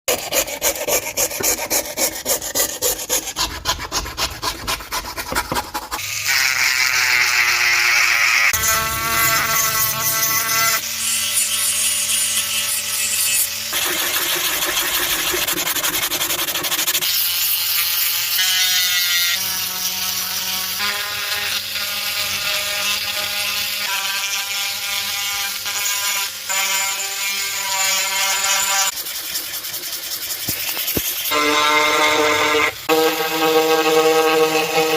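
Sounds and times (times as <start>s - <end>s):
rough grinding on wood: 0.1s - 6.0s.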